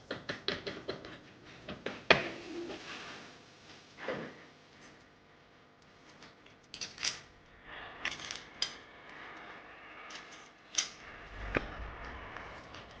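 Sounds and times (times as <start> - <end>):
dull low bump: 11.1 - 13.0.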